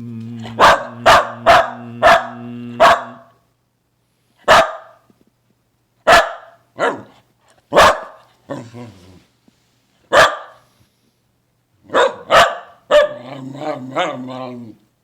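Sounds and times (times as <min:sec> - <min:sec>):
steady low hum: 0:00.0 - 0:04.3
dog barking: 0:00.6 - 0:03.3, 0:04.4 - 0:05.1, 0:06.0 - 0:08.3, 0:10.1 - 0:10.6, 0:11.9 - 0:13.2.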